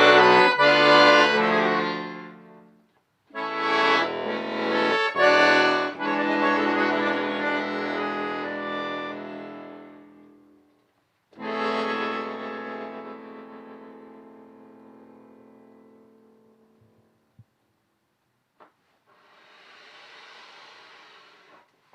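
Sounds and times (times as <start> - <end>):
accordion chords: 0.0 - 10.7, 11.3 - 17.3.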